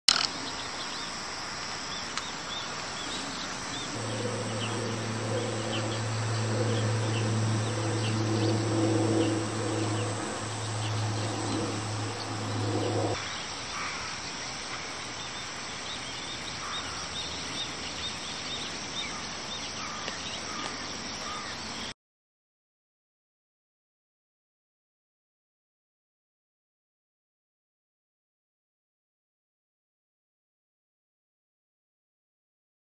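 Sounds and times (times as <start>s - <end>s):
steady low hum: 3.1s - 13.2s.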